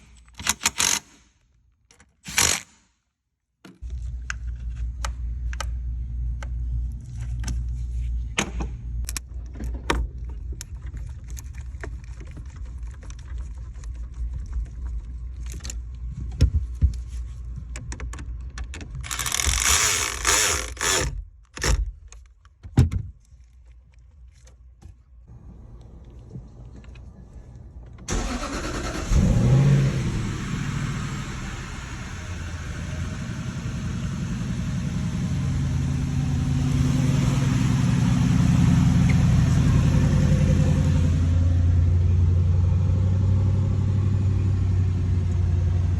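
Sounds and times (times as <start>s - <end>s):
car engine starting and idling: 25.3s - 45.9s.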